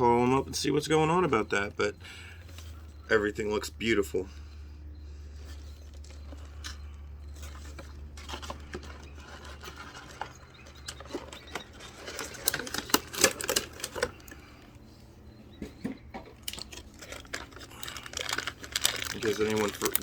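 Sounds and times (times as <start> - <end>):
low hum: 0.0 - 20.0
plastic packaging clicks and rustles: 5.4 - 20.0.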